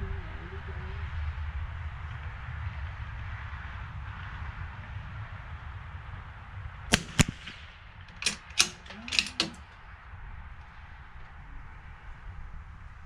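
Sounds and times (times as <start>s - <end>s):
rifle bolt metallic clicks: 8.1s - 9.7s.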